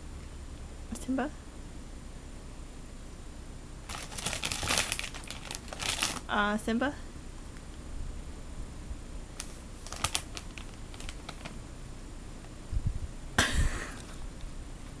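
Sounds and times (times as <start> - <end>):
tortilla chip crunching: 3.9 - 6.3, 9.9 - 11.5.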